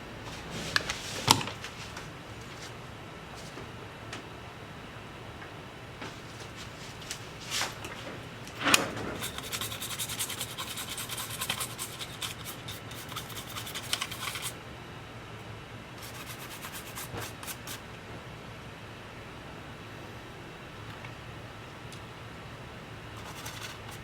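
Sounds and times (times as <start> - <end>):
scrubbing on hard surface: 9.1 - 14.5, 23.2 - 24.0.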